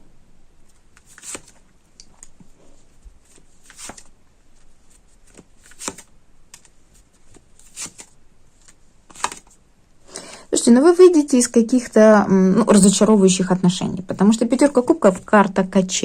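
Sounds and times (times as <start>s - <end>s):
cards swishing and tapping: 0.9s - 9.6s.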